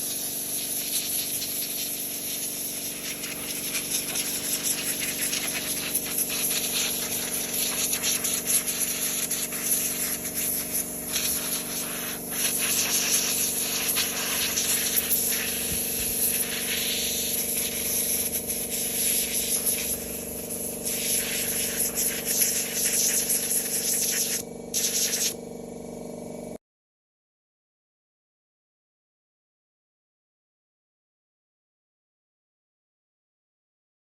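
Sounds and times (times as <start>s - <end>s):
compressed air hissing from hose: 0.0s - 25.4s
air compressor motor humming: 0.0s - 26.6s.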